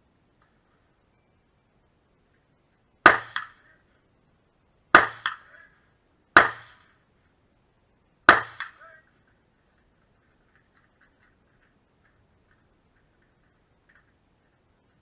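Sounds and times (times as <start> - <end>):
rifle shots: 3.1 - 3.7, 5.0 - 5.7, 8.3 - 9.0
faint echoing crack: 3.1 - 3.8, 8.3 - 15.0.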